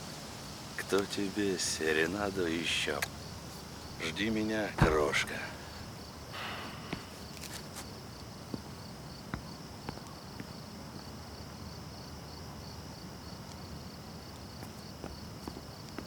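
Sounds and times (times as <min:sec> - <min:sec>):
soft hiss: 0:00.0 - 0:08.7
crickets chirping: 0:00.0 - 0:16.0
footsteps: 0:03.5 - 0:05.9.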